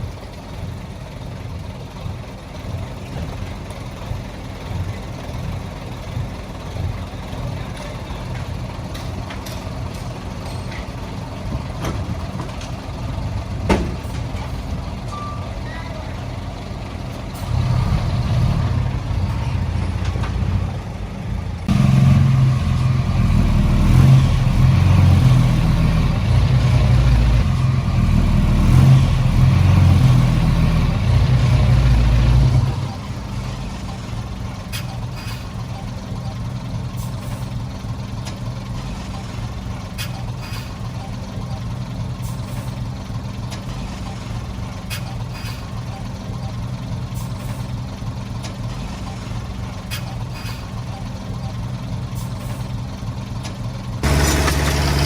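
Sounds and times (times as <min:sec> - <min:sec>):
diesel engine running: 0:00.0 - 0:55.0.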